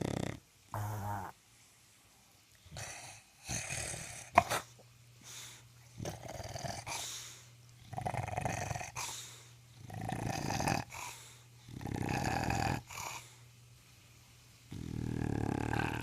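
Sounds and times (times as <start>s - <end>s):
dog snoring: 0.0s - 1.4s, 2.7s - 4.7s, 6.0s - 7.2s, 7.8s - 13.4s, 14.7s - 16.0s.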